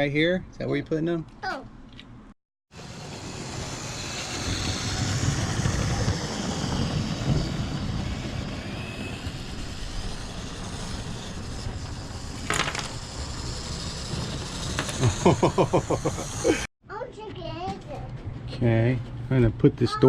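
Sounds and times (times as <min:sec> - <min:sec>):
model train rumbling on track: 0:02.8 - 0:16.7.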